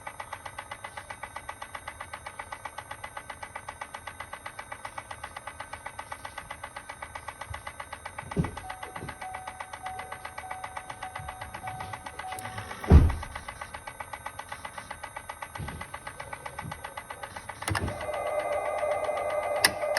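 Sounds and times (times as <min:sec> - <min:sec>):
rapid transmission clicking: 0:06.1 - 0:19.9
faint broken beeping tone: 0:08.6 - 0:12.9.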